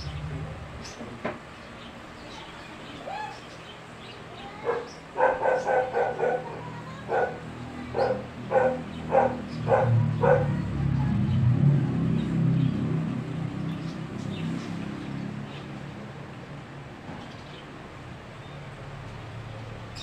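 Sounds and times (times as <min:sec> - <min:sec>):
small dog barking: 0:04.6 - 0:10.7.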